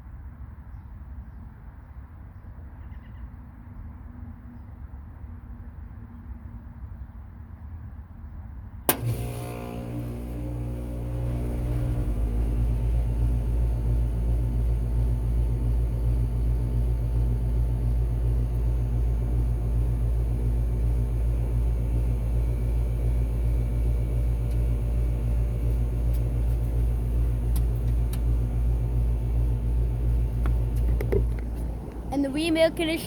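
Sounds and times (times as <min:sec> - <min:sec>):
air conditioner unit rumbling: 0:08.9 - 0:33.0.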